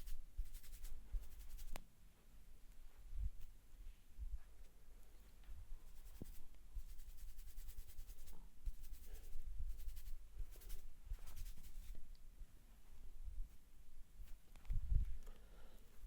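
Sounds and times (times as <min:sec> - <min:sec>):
fingers scratching hair: 0:00.0 - 0:01.8, 0:05.8 - 0:12.0.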